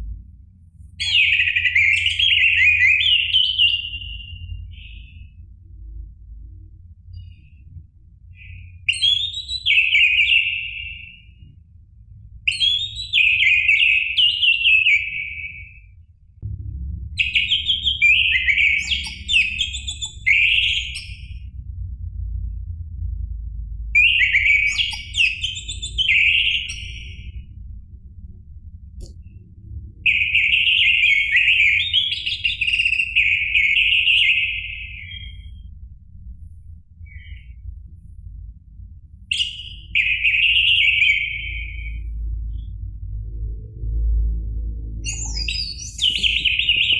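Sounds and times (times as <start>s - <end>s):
faint low background rumble: 0.0s - 46.9s
faint low hum: 0.0s - 46.9s
thrush singing whistled notes: 17.2s - 21.3s, 45.1s - 46.9s.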